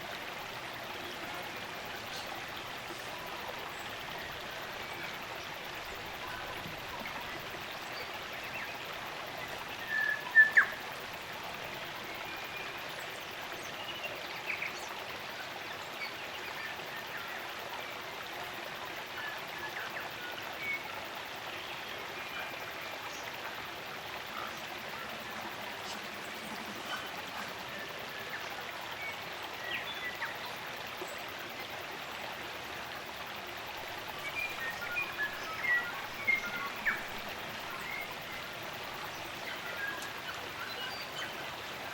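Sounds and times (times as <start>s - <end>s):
stream running: 0.0s - 41.9s
forest birds calling: 0.9s - 8.8s, 9.4s - 10.9s, 33.8s - 41.9s.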